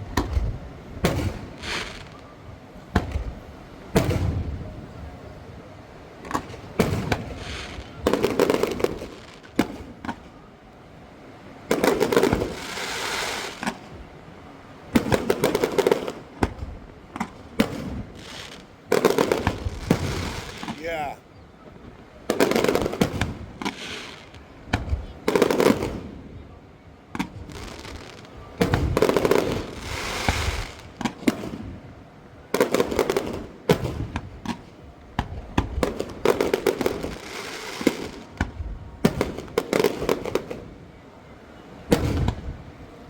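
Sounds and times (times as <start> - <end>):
fireworks booming: 0.0 - 2.2, 2.9 - 4.7, 6.3 - 10.2, 11.7 - 14.1, 14.9 - 21.2, 22.3 - 26.3, 27.1 - 40.8, 41.9 - 42.6
fireworks crackling: 0.0 - 2.3, 6.3 - 10.2, 11.7 - 14.0, 15.0 - 21.2, 22.3 - 26.1, 27.2 - 31.8, 35.2 - 40.8.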